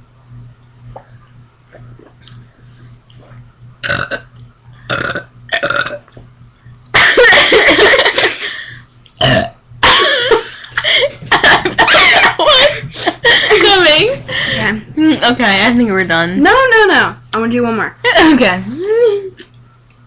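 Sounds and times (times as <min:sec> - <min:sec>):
woman burping: 0:03.8 - 0:04.3, 0:04.9 - 0:06.0, 0:09.2 - 0:10.4.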